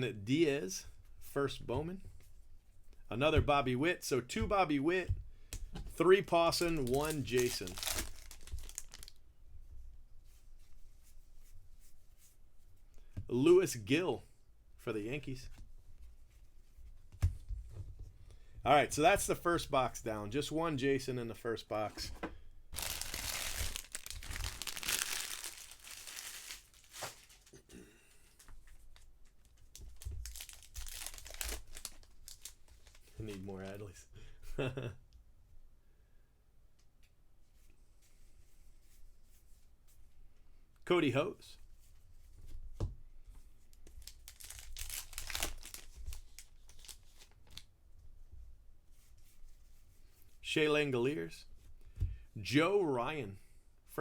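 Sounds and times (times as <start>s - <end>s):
plastic packaging crinkling: 6.5s - 9.2s, 22.8s - 27.6s, 28.3s - 33.5s, 43.8s - 47.7s.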